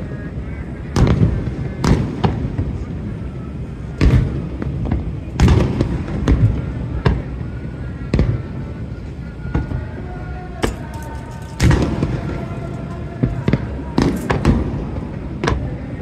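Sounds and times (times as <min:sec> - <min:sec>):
fireworks shells booming: 0:04.0 - 0:07.4, 0:10.6 - 0:15.8.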